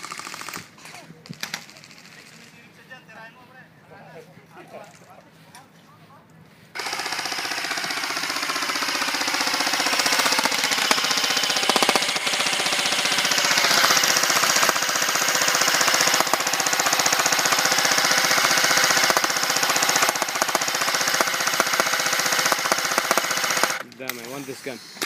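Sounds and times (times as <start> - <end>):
airsoft gun rapid fire: 0.0 - 2.5, 6.8 - 24.5
gearbox whirring: 6.8 - 24.3.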